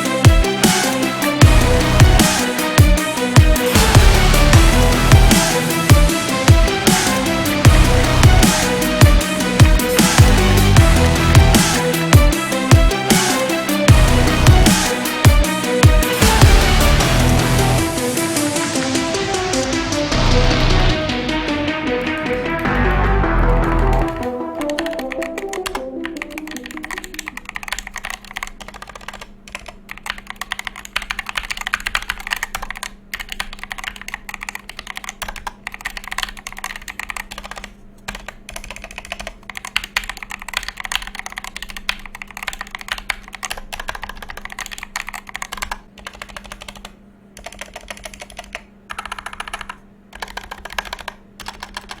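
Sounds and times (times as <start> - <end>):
music: 0.0 - 27.4
mechanical keyboard typing: 23.9 - 52.0.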